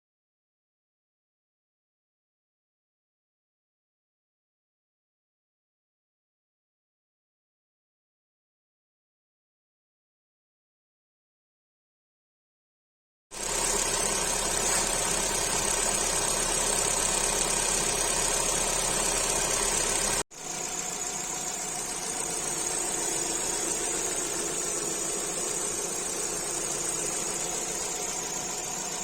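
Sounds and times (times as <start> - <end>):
petrol engine idling: 13.4 - 29.0.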